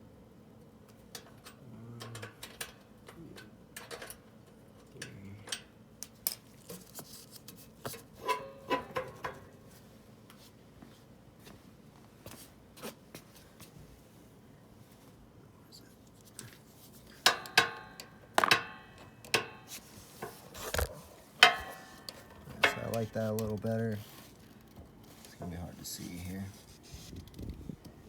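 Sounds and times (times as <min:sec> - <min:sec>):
tools and metal parts clinking: 0:03.8 - 0:04.2.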